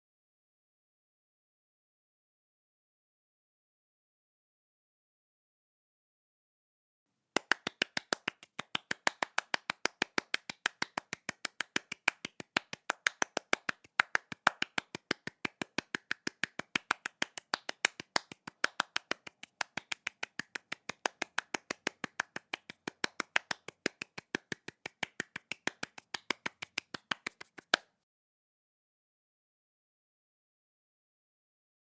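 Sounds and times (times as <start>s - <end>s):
hands clapping quickly: 7.4s - 27.9s.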